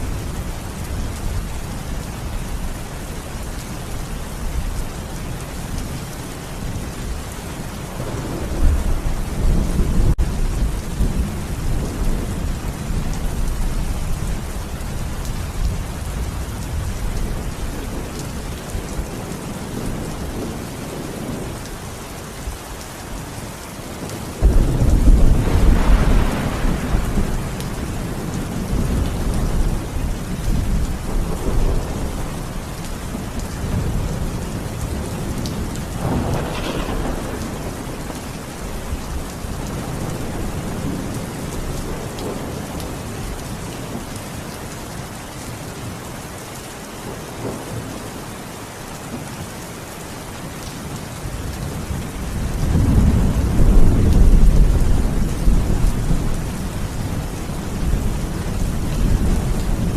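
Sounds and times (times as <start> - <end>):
steady rain: 0.0 - 59.9
rolling thunder: 7.8 - 21.9, 24.0 - 43.4, 51.4 - 59.9.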